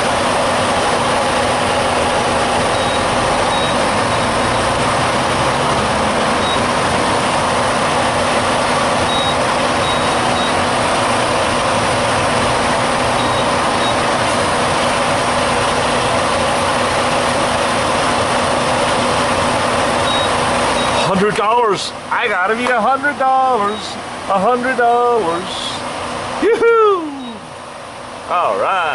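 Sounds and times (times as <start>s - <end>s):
diesel truck engine running: 0.0s - 28.9s
short high beeps: 2.7s - 4.6s, 6.4s - 6.7s, 9.1s - 10.6s, 20.0s - 21.0s.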